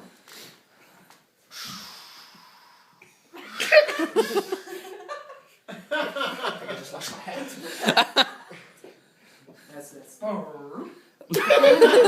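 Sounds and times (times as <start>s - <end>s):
laughter: 3.5s - 8.7s, 11.3s - 12.0s.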